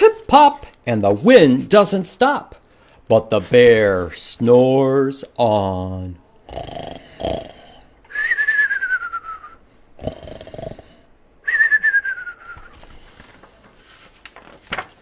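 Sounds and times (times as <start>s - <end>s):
man imitating snoring: 6.5s - 7.9s, 10.0s - 11.1s.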